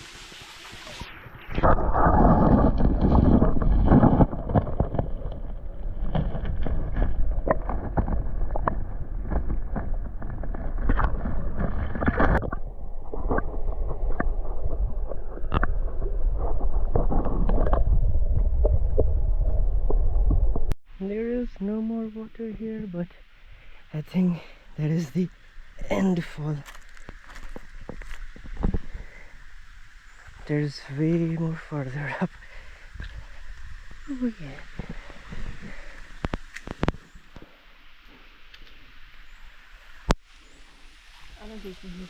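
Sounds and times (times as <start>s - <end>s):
wind rumbling on microphone: 0.8s - 21.8s, 26.5s - 37.4s.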